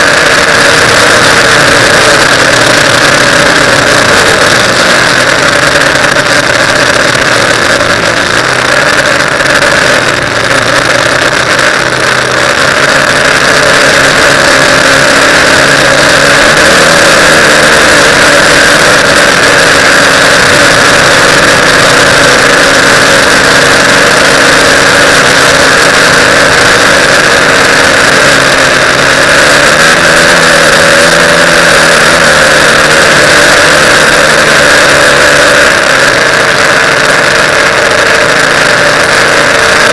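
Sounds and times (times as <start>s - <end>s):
quadcopter motors whining: 0.0s - 39.9s.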